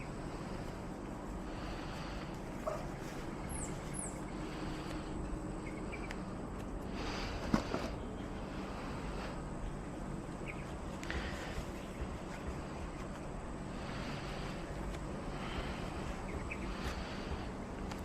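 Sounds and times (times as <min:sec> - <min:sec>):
outdoor background hum: 0:00.0 - 0:18.0
small birds chirping: 0:01.4 - 0:07.1, 0:10.1 - 0:14.6, 0:15.3 - 0:17.5.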